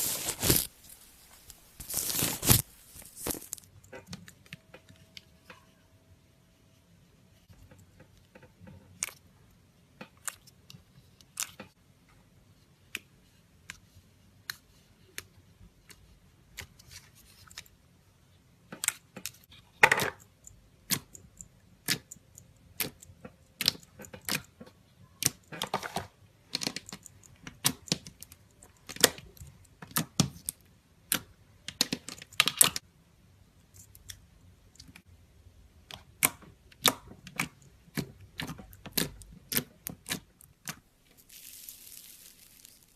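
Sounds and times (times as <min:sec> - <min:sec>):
slime squelching: 0:00.0 - 0:03.7, 0:36.8 - 0:42.9.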